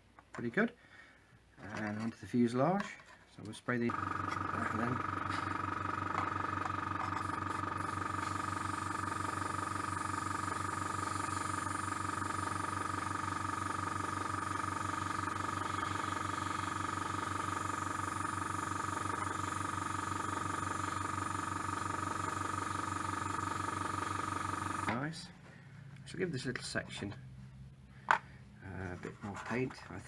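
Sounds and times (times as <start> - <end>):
compressor pulsing hum: 3.9 - 26.4.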